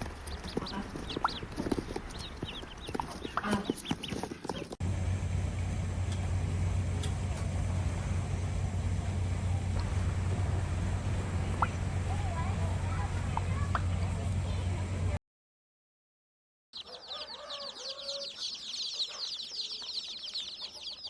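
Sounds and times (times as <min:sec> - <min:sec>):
chickens clucking: 0:00.0 - 0:04.8, 0:09.7 - 0:14.7, 0:16.8 - 0:21.0
steady low hum: 0:00.0 - 0:15.2.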